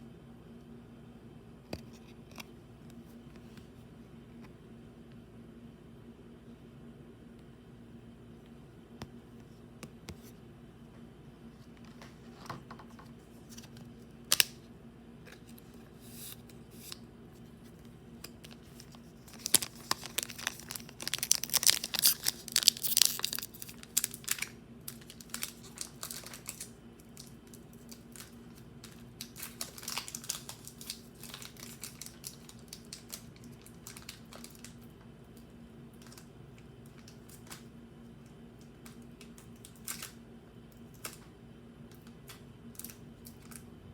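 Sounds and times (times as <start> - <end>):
faint steady hum: 0.0 - 43.9
foil wrapper crinkling and tearing: 18.2 - 34.8, 38.8 - 40.2.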